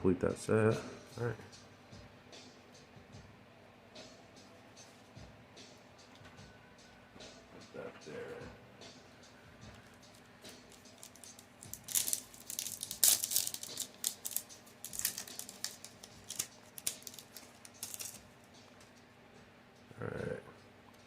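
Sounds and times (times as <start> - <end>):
cards rustling: 9.7 - 18.3
foil wrapper crinkling and tearing: 10.7 - 18.2.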